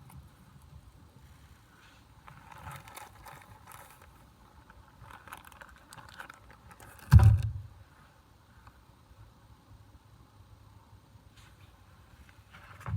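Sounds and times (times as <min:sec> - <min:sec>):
rustling and scraping of handling: 0:00.0 - 0:07.6, 0:11.3 - 0:12.9
loud dull thump: 0:07.1 - 0:07.7.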